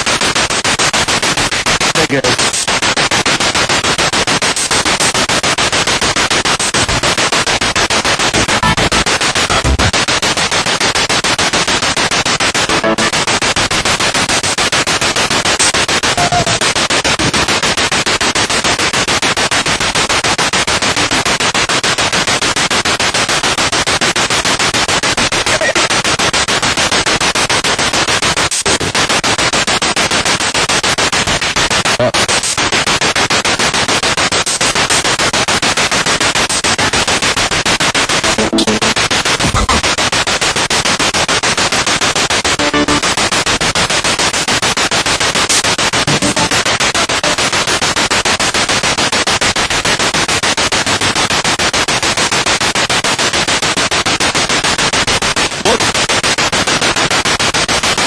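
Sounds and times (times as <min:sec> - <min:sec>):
radio scanning static: 0:00.0 - 0:18.6, 0:24.4 - 0:26.8, 0:27.4 - 0:35.8, 0:36.4 - 0:41.0, 0:42.0 - 0:48.8, 0:55.5 - 0:56.0
faint broadcast snatches: 0:00.0 - 0:58.0.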